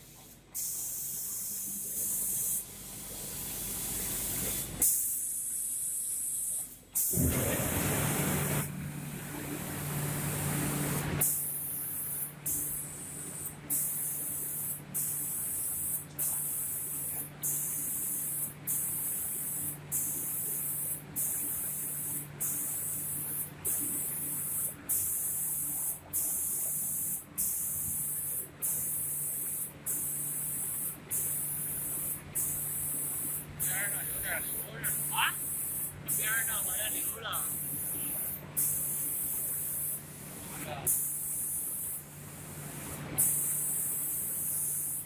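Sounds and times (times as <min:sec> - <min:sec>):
spray gun hissing: 0:00.0 - 0:08.7, 0:10.1 - 0:45.0
machine hum: 0:07.1 - 0:11.2.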